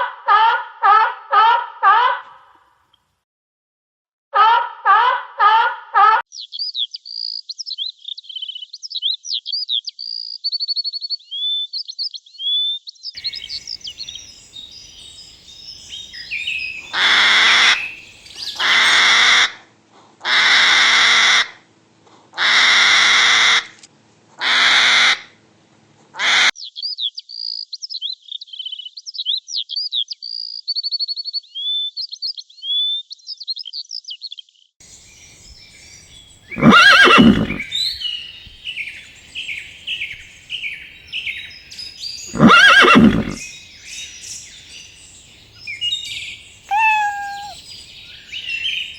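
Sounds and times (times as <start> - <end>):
small birds chirping: 13.2 - 19.0, 34.8 - 48.9
harsh bird calls: 13.2 - 19.2, 34.9 - 48.9.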